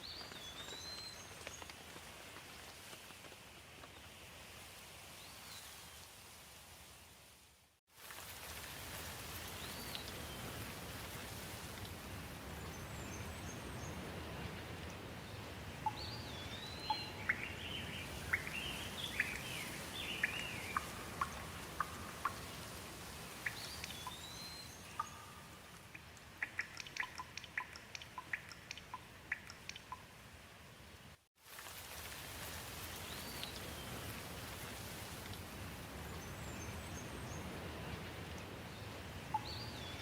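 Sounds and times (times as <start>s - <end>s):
steady rain: 0.0s - 40.0s
water dripping: 8.0s - 12.0s, 20.2s - 30.2s.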